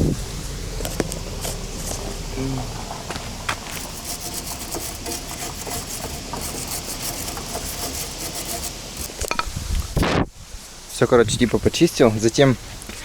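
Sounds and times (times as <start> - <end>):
hand scrubbing metal parts: 0.0 - 9.4.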